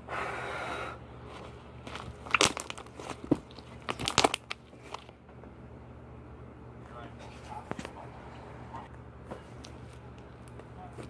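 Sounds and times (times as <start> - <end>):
slime squeezed by hand: 1.4 - 5.1.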